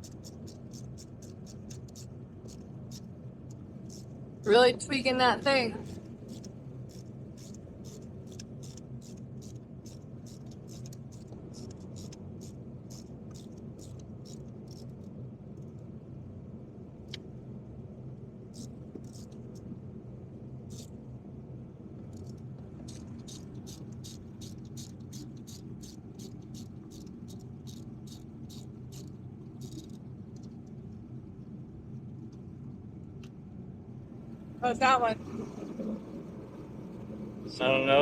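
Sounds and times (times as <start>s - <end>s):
steady low hum: 0.0s - 38.0s
ratchet wrench clicking: 6.3s - 12.2s, 23.3s - 30.0s.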